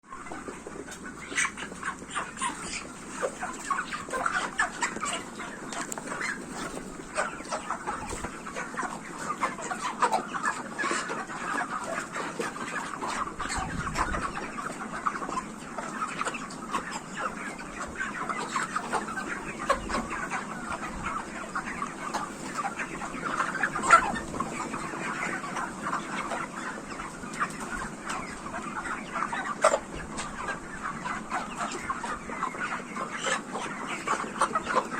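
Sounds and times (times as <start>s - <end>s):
chickens clucking and calling: 0.0s - 34.9s.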